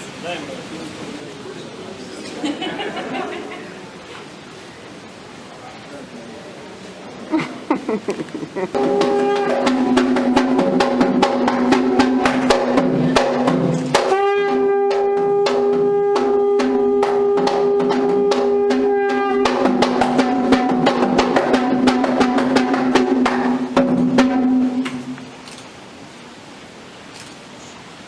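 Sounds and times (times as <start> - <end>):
drums beating fast: 8.0 - 25.2
wind instrument holding long notes: 8.8 - 10.8, 14.0 - 21.9.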